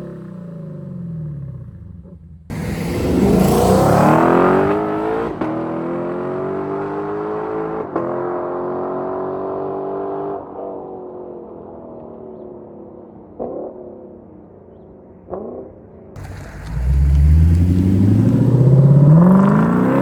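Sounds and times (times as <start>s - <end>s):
car engine accelerating hard: 2.5s - 7.8s, 16.2s - 20.0s.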